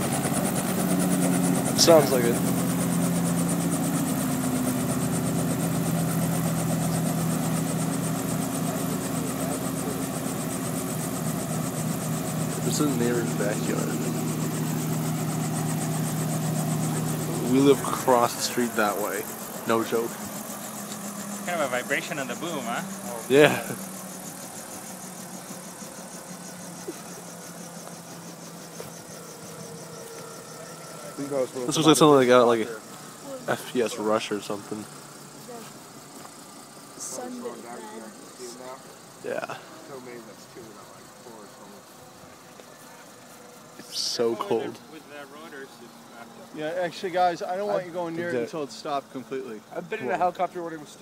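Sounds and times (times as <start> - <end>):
helicopter engine and rotor running: 0.0 - 51.0.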